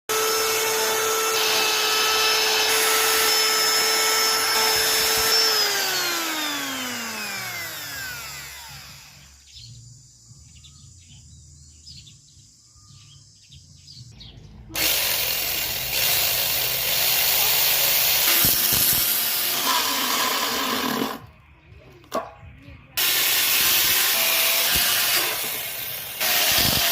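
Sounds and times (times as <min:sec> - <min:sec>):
power tool whining: 0:00.1 - 0:09.4, 0:14.8 - 0:21.3, 0:23.0 - 0:26.9.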